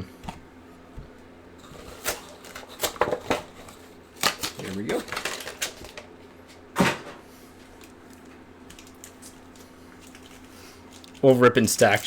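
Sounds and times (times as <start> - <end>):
packaging tearing: 1.6 - 6.1
handling ticks and rustles: 7.6 - 12.0.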